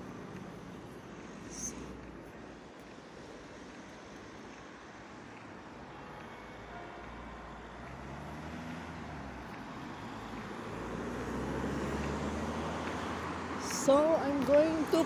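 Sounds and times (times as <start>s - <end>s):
car approaching: 0.0s - 15.0s.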